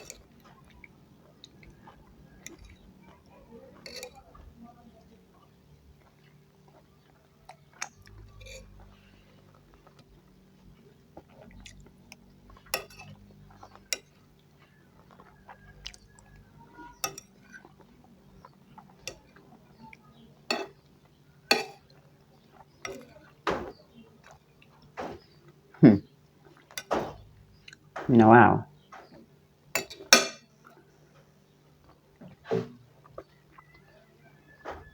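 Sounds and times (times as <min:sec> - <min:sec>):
cutlery clinking on a plate: 0:00.0 - 0:00.3, 0:01.8 - 0:02.9, 0:03.8 - 0:04.3, 0:07.8 - 0:08.9, 0:12.6 - 0:14.2, 0:16.9 - 0:17.8, 0:19.0 - 0:19.4, 0:20.5 - 0:20.8, 0:21.5 - 0:21.9, 0:22.8 - 0:23.8, 0:26.6 - 0:27.2, 0:29.8 - 0:30.6
chewing: 0:00.0 - 0:27.9, 0:29.8 - 0:34.6.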